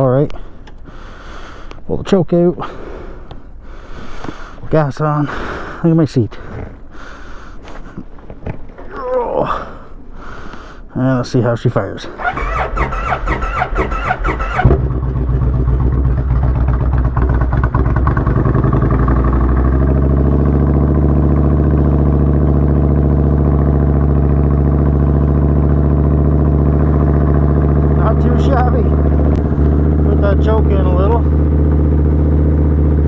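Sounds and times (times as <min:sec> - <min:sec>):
motorcycle starter cranking: 0:12.2 - 0:18.6
motorcycle engine idling: 0:12.2 - 0:33.0.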